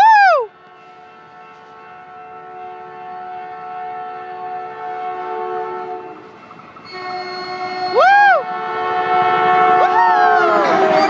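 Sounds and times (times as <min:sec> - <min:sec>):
passenger train whine: 0:00.0 - 0:11.0.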